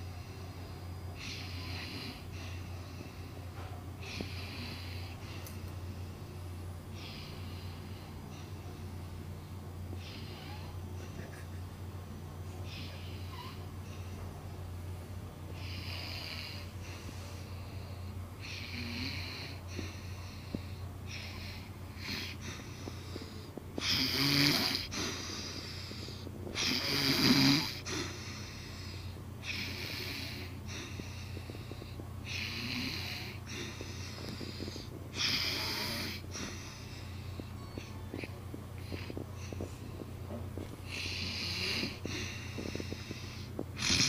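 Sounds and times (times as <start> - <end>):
man snoring: 18.4 - 20.0, 21.1 - 37.2, 40.8 - 44.0.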